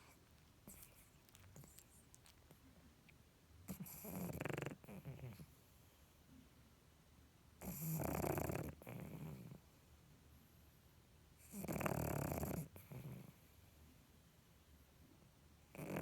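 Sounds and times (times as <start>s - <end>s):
dog snoring: 3.7s - 5.5s, 7.6s - 9.6s, 11.4s - 13.5s, 15.7s - 16.0s.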